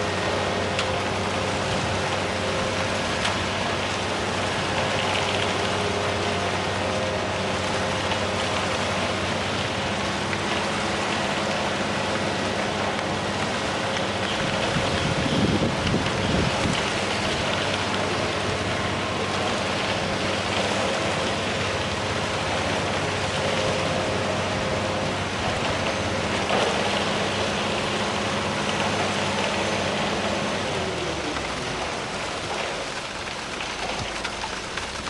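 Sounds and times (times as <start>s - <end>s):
heavy vehicle engine running: 0.0s - 35.0s
rain-like hiss: 26.7s - 35.0s.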